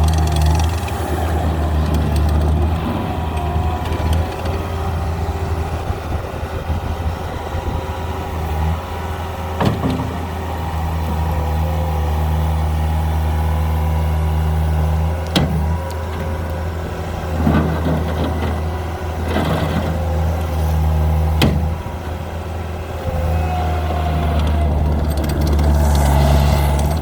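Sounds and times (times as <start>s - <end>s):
rattling: 0.0s - 6.8s, 15.2s - 27.0s
diesel engine running: 0.0s - 27.0s.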